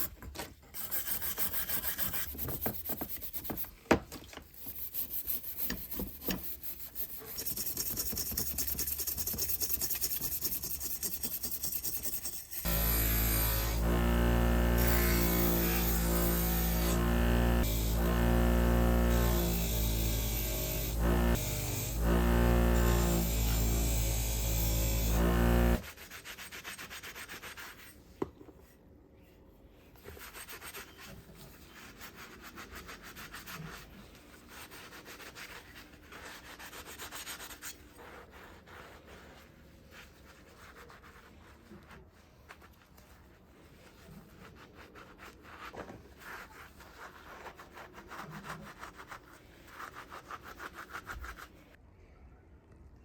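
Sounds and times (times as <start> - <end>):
sandpaper rubbing back and forth: 4.6 - 27.9.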